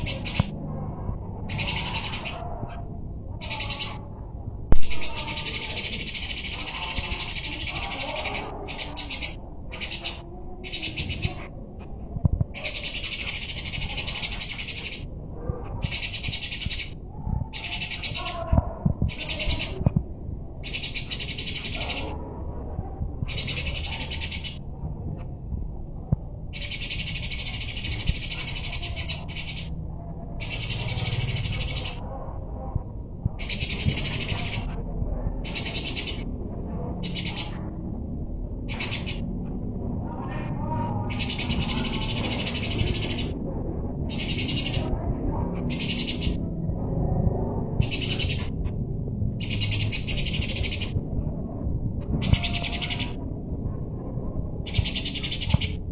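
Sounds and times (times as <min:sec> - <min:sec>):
sparrows chattering: 0:00.0 - 0:11.6, 0:12.5 - 0:20.0, 0:20.6 - 0:22.4, 0:23.2 - 0:24.6, 0:26.4 - 0:32.1, 0:33.4 - 0:37.8, 0:38.5 - 0:39.9, 0:40.6 - 0:43.4, 0:44.0 - 0:51.0, 0:52.1 - 0:53.2, 0:54.6 - 0:55.9.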